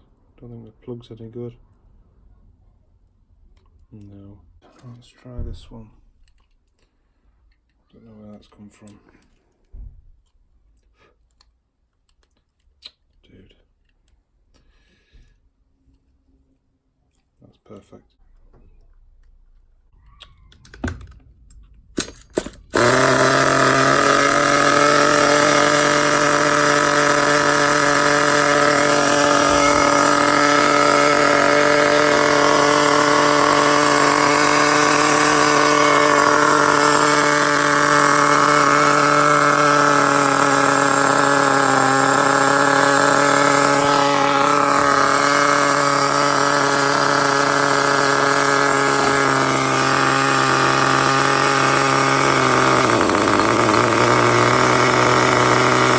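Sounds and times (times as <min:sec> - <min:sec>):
small engine sputtering and idling: 0:20.6 - 0:55.9.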